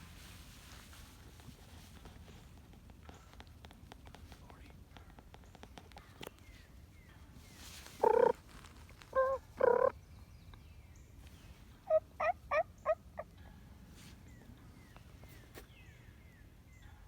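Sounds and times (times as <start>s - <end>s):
wild turkey calling: 7.9s - 8.5s, 9.1s - 10.0s, 11.8s - 13.4s
turkey gobble: 8.0s - 8.4s, 9.1s - 9.9s, 11.9s - 13.3s.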